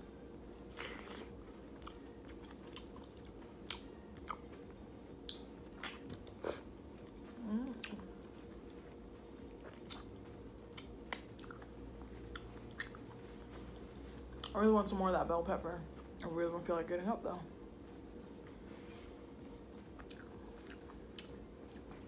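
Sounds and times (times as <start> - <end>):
person chewing: 0.8 - 4.6, 5.2 - 8.1, 9.4 - 13.2, 19.9 - 22.0.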